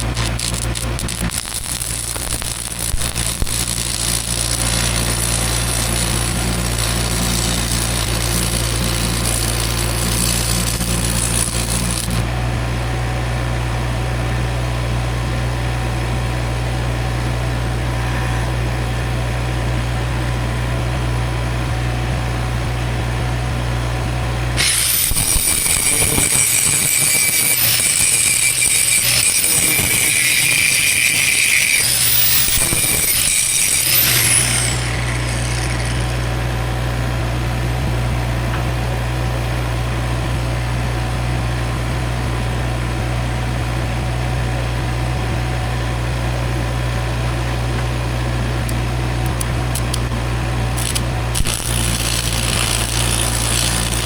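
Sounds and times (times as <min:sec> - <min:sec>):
welding arc hiss: 0:00.0 - 0:12.3, 0:24.6 - 0:36.4, 0:48.6 - 0:50.2, 0:50.8 - 0:54.0
low engine hum: 0:34.8 - 0:51.4.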